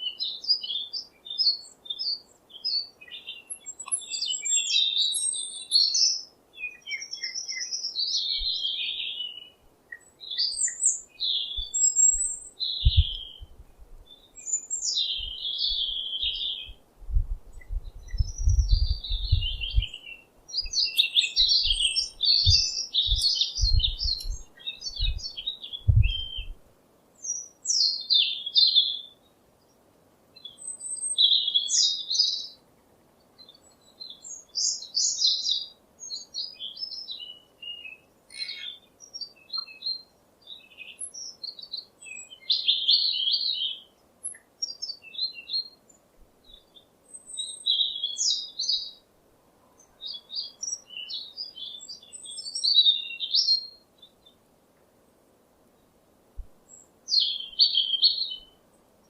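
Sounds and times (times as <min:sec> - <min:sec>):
songbirds chirping and singing: 0:00.0 - 0:16.8, 0:17.5 - 0:26.6, 0:27.2 - 0:29.8, 0:30.4 - 0:54.5, 0:56.6 - 0:59.0.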